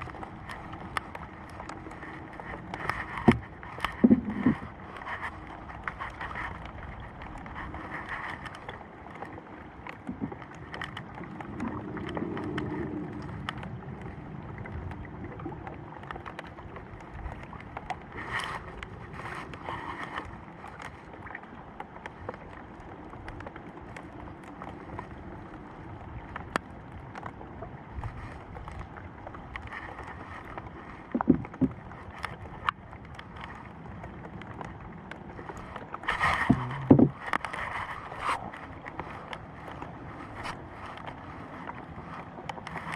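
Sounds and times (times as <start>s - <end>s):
boat ambient noise: 0.0s - 42.9s
light knocks and clicks: 2.5s - 6.7s, 29.5s - 33.6s.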